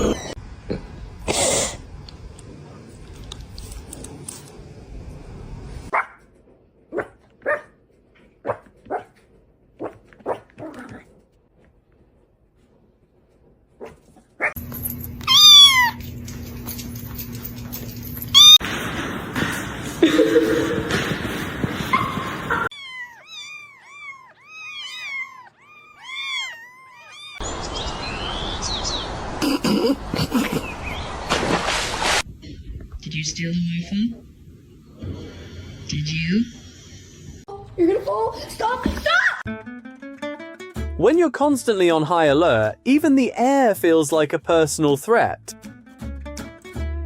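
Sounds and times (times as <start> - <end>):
dog barking: 5.9 - 6.2, 6.9 - 7.8, 8.4 - 9.2, 9.8 - 10.5, 13.8 - 14.6
cats meowing: 15.2 - 16.2, 18.4 - 18.6, 22.7 - 27.4
rushing noise: 18.6 - 22.7.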